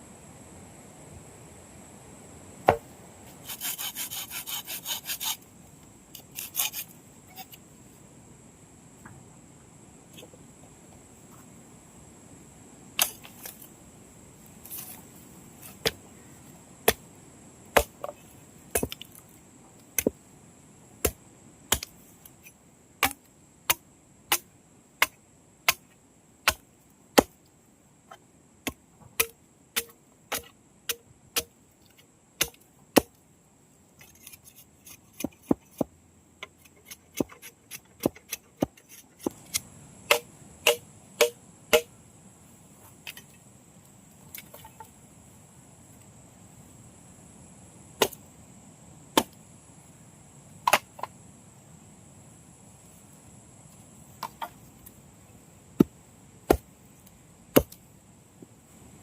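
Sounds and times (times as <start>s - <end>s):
blade chopping strikes: 39.2s - 41.9s.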